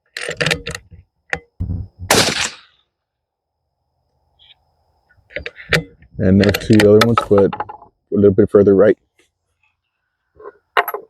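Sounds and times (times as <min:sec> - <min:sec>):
suppressed rifle shot: 0:02.0 - 0:02.8.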